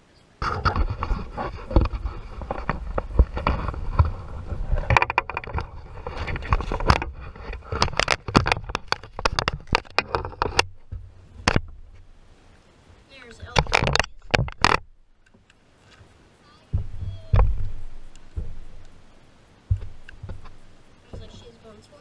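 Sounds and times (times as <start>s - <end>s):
knocks clicks and scrapes in kayak: 0.4s - 12.1s, 13.2s - 22.0s
sharp knock: 16.7s - 19.1s, 19.7s - 21.5s
low rumble: 16.7s - 21.5s.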